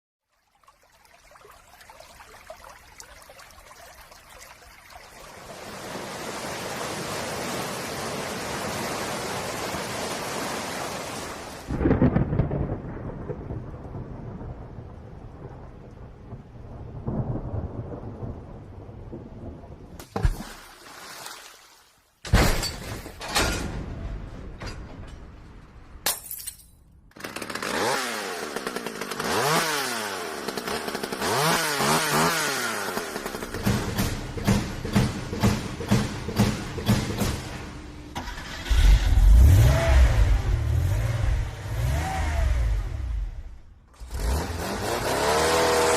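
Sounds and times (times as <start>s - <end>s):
heavy rain: 3.5s - 20.0s
thunder rumbling: 11.7s - 20.0s.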